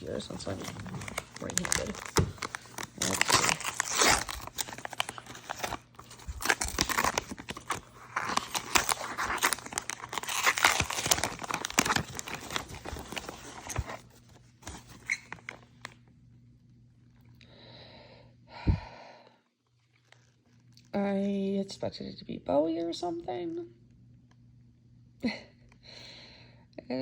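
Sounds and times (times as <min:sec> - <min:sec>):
packaging crinkling and tearing: 0:00.0 - 0:16.0, 0:19.9 - 0:20.9.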